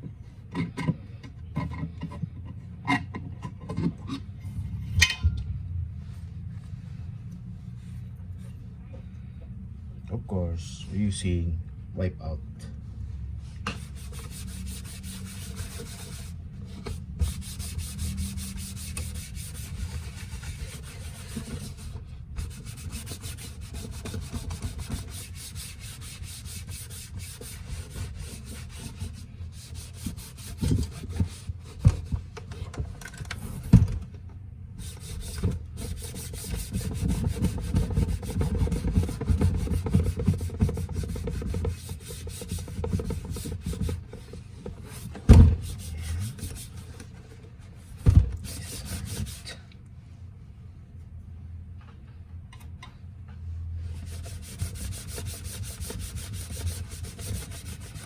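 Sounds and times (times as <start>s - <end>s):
hand rubbing casing: 13.7s - 32.2s, 34.8s - 47.0s, 54.0s - 58.0s.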